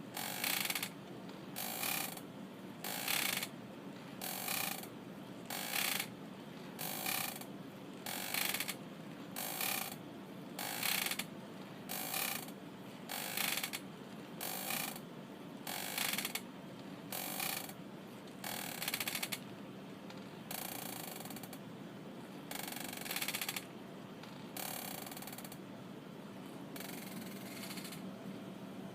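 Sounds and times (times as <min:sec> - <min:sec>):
rocking chair creaking: 0:00.2 - 0:02.2, 0:02.8 - 0:08.8, 0:09.4 - 0:10.0, 0:10.6 - 0:12.5, 0:13.1 - 0:13.8, 0:14.4 - 0:15.0, 0:15.6 - 0:21.6, 0:22.5 - 0:25.6, 0:26.8 - 0:28.0.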